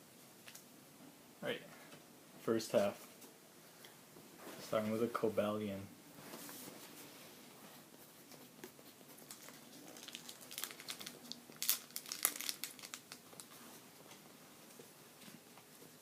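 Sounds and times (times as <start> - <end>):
foil wrapper crinkling: 9.2 - 13.5.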